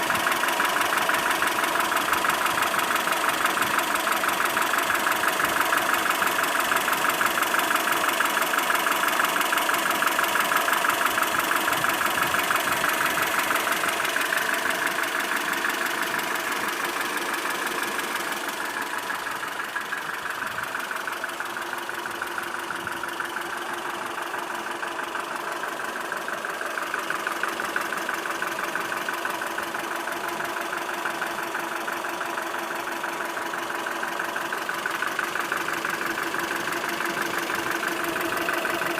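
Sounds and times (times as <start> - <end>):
engine running with rapid knock: 0.0 - 38.9.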